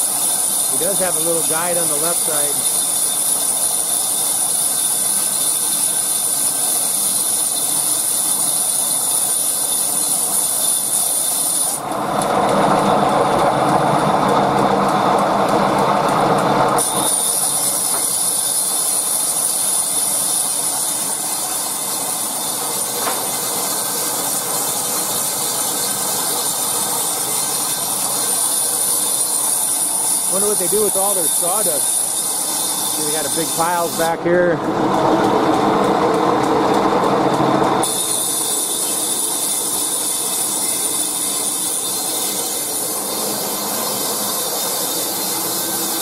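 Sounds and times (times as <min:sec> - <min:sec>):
bandsaw whine: 0:00.0 - 0:46.0
continuous mechanical noise: 0:00.0 - 0:46.0.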